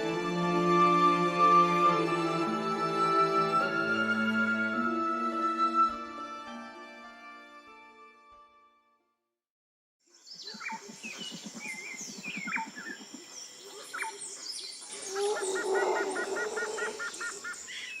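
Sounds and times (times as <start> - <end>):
wild birds calling: 10.4 - 18.0.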